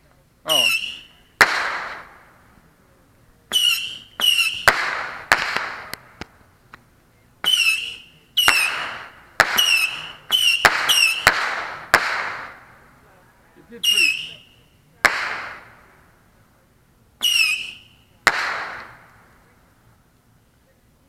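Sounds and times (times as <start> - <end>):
firework rockets whistling: 0.5 - 2.3, 3.5 - 6.2, 7.4 - 12.7, 13.8 - 16.0, 17.2 - 19.2
firework cracks: 0.5 - 2.7, 3.5 - 13.1, 13.8 - 16.3, 17.2 - 19.6.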